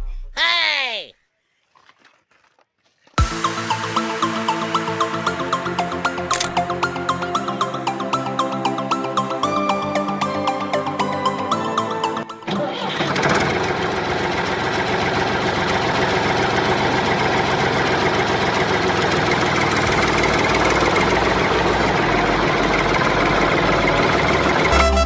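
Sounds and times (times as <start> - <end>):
small engine chugging: 12.5 - 25.0.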